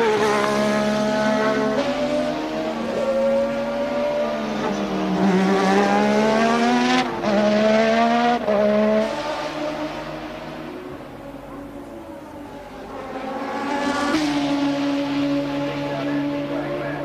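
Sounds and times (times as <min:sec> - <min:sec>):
race car engine accelerating: 0:00.0 - 0:17.0.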